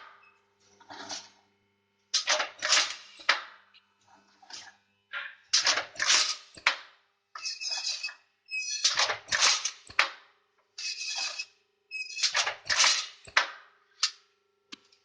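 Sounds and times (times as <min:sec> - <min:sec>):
sharp machine clacks: 0:02.2 - 0:03.4, 0:05.6 - 0:06.7, 0:08.7 - 0:10.1, 0:12.0 - 0:13.5.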